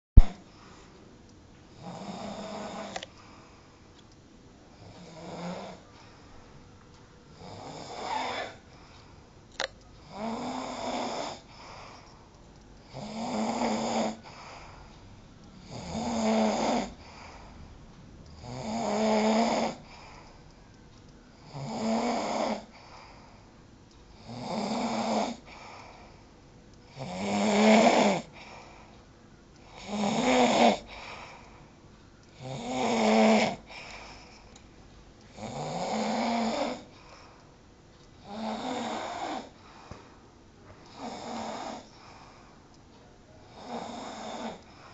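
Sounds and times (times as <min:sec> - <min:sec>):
person snoring loudly: 0:04.9 - 0:05.8, 0:07.4 - 0:08.6, 0:10.1 - 0:11.5, 0:12.9 - 0:14.3, 0:15.6 - 0:17.0, 0:18.4 - 0:19.9, 0:21.5 - 0:22.7, 0:24.2 - 0:25.5, 0:26.9 - 0:28.3, 0:29.7 - 0:30.9, 0:32.4 - 0:33.7, 0:35.4 - 0:36.9, 0:38.2 - 0:39.5, 0:43.5 - 0:44.6.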